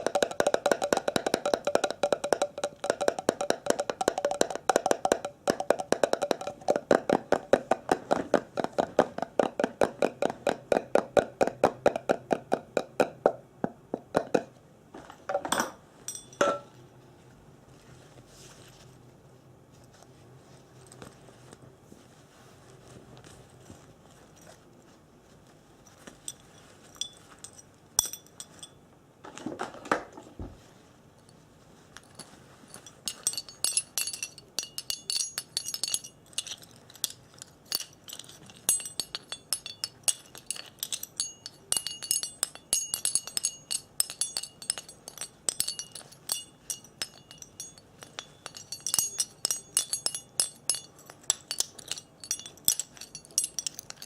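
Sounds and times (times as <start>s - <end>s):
glassy taps and clinks: 0.0s - 7.6s, 15.4s - 16.7s, 26.2s - 28.8s, 32.0s - 54.0s.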